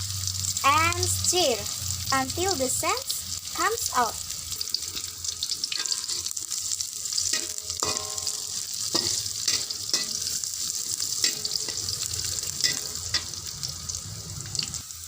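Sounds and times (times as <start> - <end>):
food sizzling in hot oil: 0.0 - 15.0
spatula scraping and clinking pan: 5.7 - 6.4, 7.2 - 10.4, 11.1 - 13.4.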